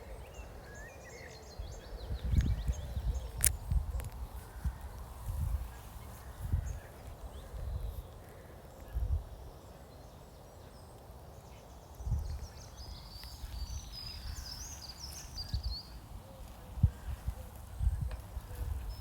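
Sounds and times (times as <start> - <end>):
low rumbling wind gusts: 0.0 - 10.7, 11.3 - 19.0
bird singing high chirps: 11.5 - 16.0.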